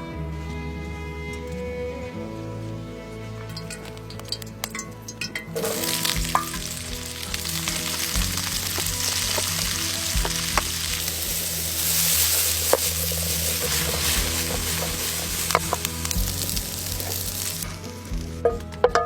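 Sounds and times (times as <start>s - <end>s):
food sizzling in hot oil: 5.6s - 18.3s.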